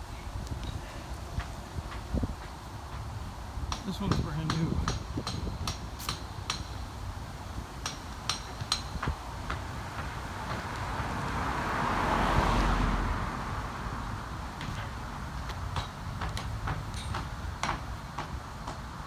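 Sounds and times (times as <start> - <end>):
footsteps on pavement: 0.3 - 6.5, 7.2 - 19.0
car passing: 9.1 - 18.5.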